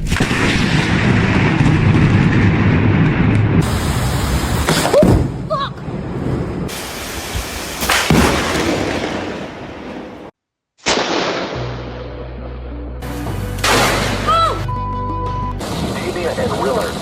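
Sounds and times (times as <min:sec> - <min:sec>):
thunder rumbling and cracking: 0:00.0 - 0:10.3.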